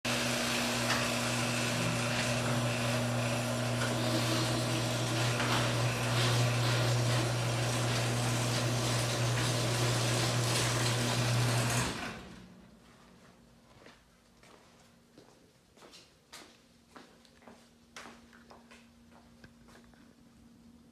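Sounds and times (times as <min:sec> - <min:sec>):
garage door opener hissing: 0:00.1 - 0:12.6
low motor hum: 0:00.1 - 0:12.6.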